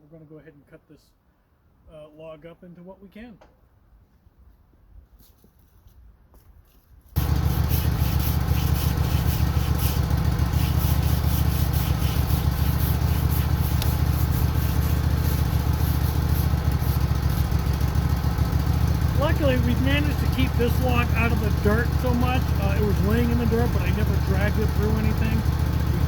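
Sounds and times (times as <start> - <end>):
sawmill engine running: 7.2 - 26.0.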